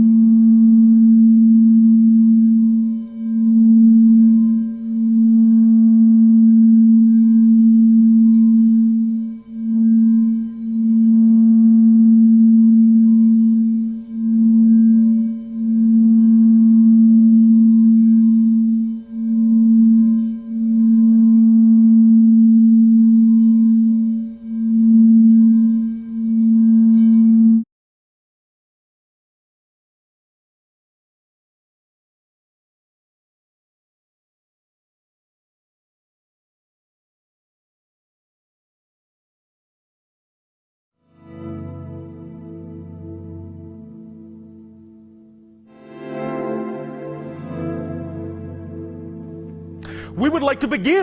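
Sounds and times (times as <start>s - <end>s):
singing bowl low tone: 0.0s - 27.6s.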